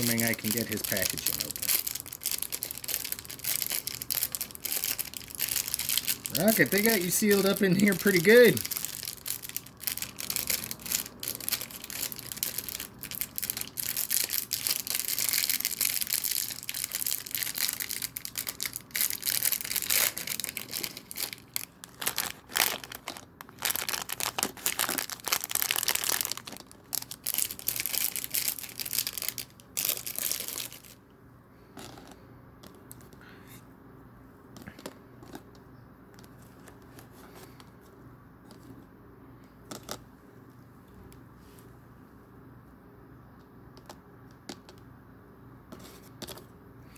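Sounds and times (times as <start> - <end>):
plastic packet crinkling and tearing: 0.0 - 31.0.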